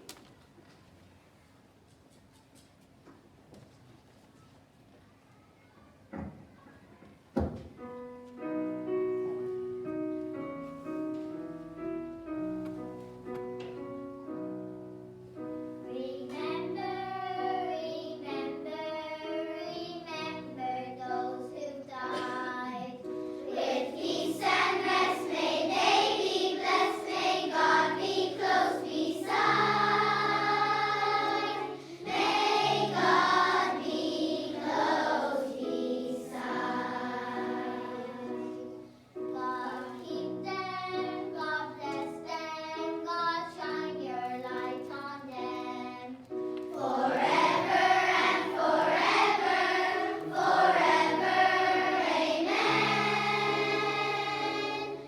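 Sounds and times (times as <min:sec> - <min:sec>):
children's choir singing: 0:20.8 - 0:42.2, 0:43.5 - 0:55.0.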